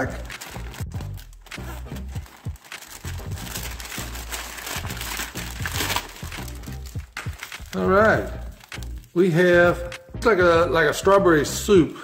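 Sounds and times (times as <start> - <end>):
plastic packaging crinkling: 0.0 - 9.3.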